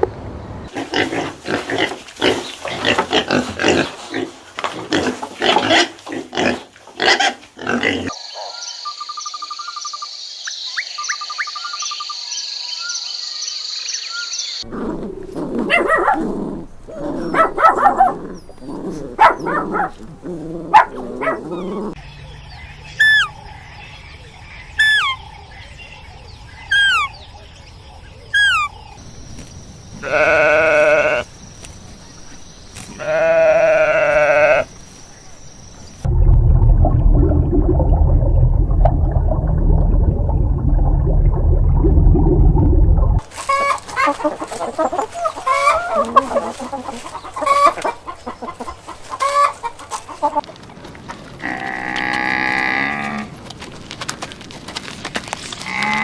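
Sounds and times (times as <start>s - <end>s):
goat or sheep bleating: 30.0s - 31.2s, 32.9s - 34.7s
loud low rumbling: 36.0s - 43.2s
chickens clucking: 43.2s - 51.2s.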